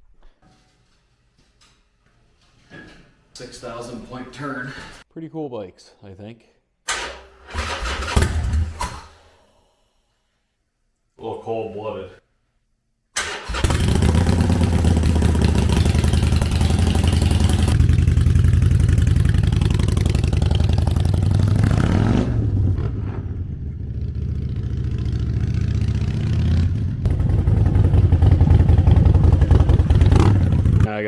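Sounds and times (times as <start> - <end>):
motorcycle engine revving: 7.5 - 8.9, 13.2 - 30.9.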